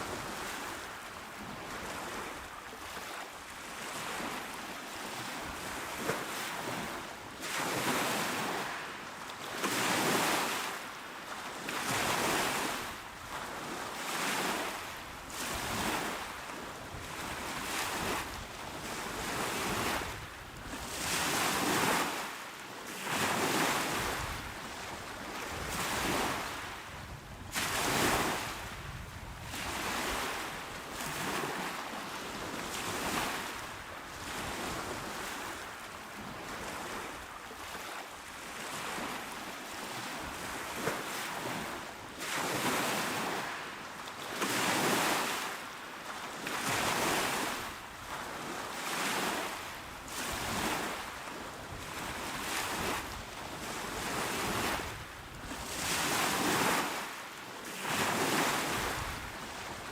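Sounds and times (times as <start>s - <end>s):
small waves washing onto shore: 0.0s - 59.9s.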